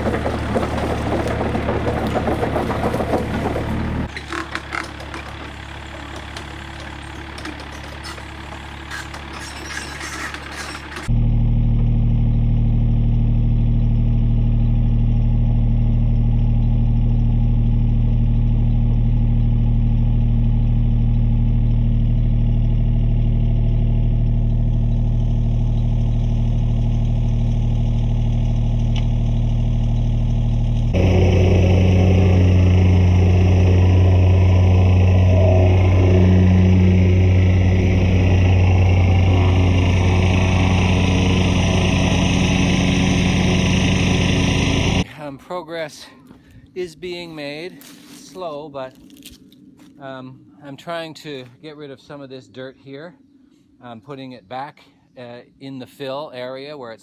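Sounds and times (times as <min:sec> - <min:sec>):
metallic clatter: 0:00.0 - 0:11.1
excavator engine running: 0:00.0 - 0:45.4.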